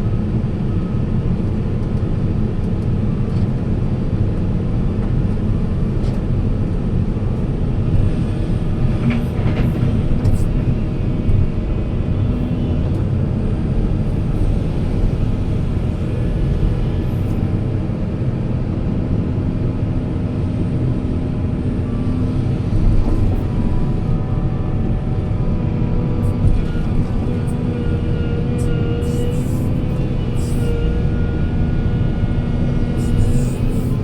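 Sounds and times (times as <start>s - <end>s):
heavy diesel engine rumbling: 0.0s - 34.0s.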